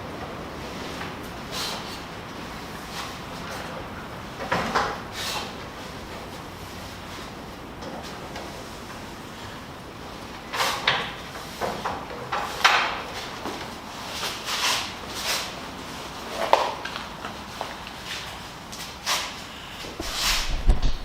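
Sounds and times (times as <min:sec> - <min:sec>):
objects scraping and rustling: 0:10.5 - 0:21.0.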